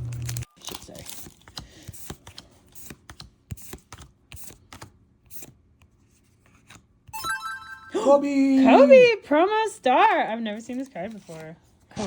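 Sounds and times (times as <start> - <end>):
cards clicking and sliding: 0.1 - 6.9.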